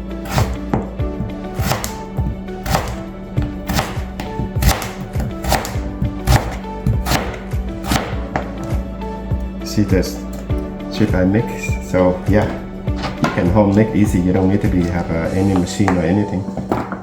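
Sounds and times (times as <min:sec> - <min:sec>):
background music: 0:00.0 - 0:17.0
knife cutting potato on board: 0:00.2 - 0:08.8.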